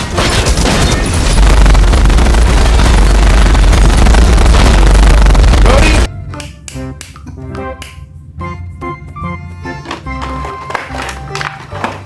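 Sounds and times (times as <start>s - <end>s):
heavy booming blasts: 0.0s - 6.1s
rapid gunfire: 0.0s - 6.1s
bass rumble: 1.1s - 6.1s.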